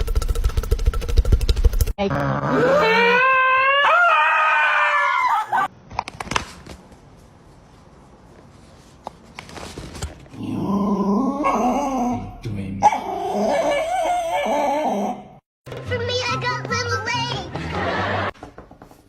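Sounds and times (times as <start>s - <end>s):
dog howling: 2.5s - 5.7s, 10.8s - 15.4s.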